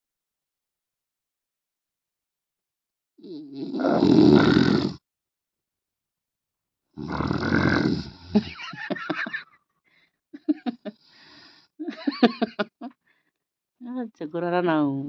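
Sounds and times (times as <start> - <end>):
man snoring loudly: 3.2 - 5.0, 7.0 - 8.6.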